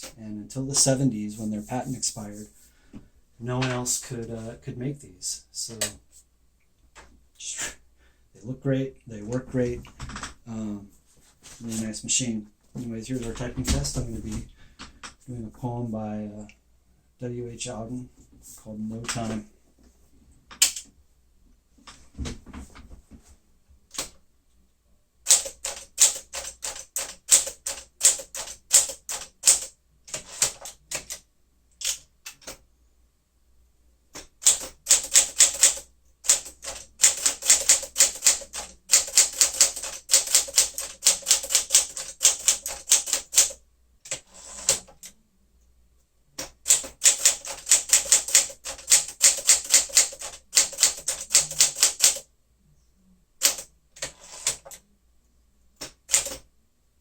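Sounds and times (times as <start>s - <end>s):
manual typewriter typing: 25.3s - 31.2s, 31.8s - 32.6s, 34.2s - 45.1s, 46.4s - 52.3s, 53.4s - 54.8s, 55.8s - 56.4s.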